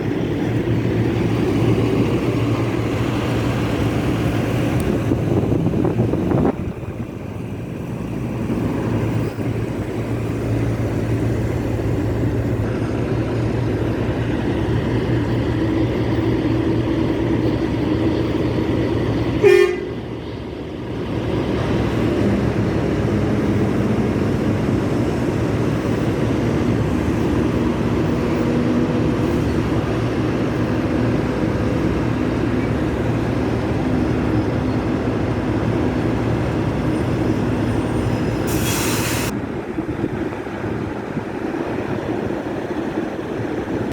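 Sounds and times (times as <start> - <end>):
truck engines running: 0.0 - 43.9
truck horn toot: 19.4 - 20.0.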